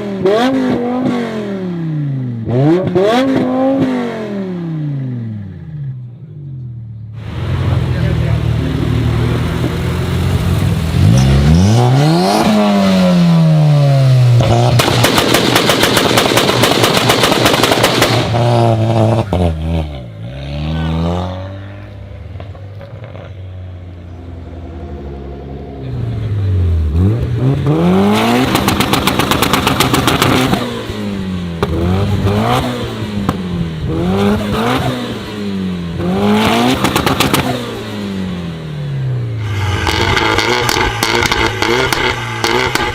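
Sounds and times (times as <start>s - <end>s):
car engine revving: 0.0s - 42.9s
exhaust crackles and pops: 14.4s - 19.3s, 28.1s - 30.6s, 36.4s - 37.6s, 39.4s - 42.9s.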